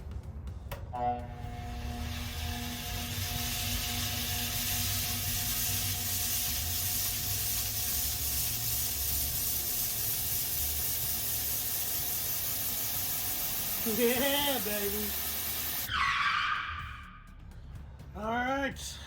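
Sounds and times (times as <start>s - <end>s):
low motor hum: 0.4s - 7.2s
grinder belt hiss: 1.5s - 15.9s.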